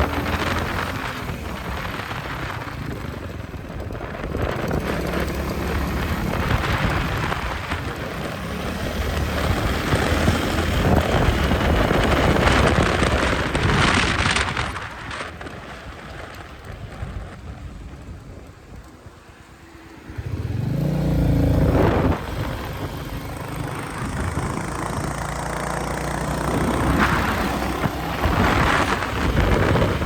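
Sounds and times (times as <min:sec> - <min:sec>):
motorcycle engine cruising: 0:00.0 - 0:30.0
wind rush on microphone: 0:00.0 - 0:30.0.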